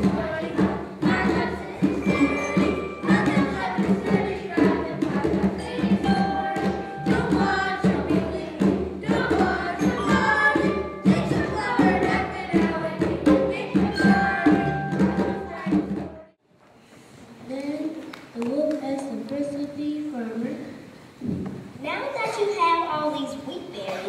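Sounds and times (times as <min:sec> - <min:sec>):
music with percussion: 0:00.0 - 0:16.4
voices singing together: 0:00.0 - 0:16.4.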